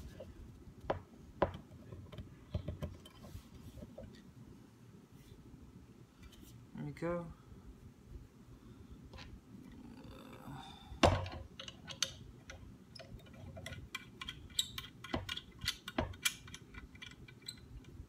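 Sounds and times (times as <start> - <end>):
clicks and knocks of small parts: 11.1 - 18.0.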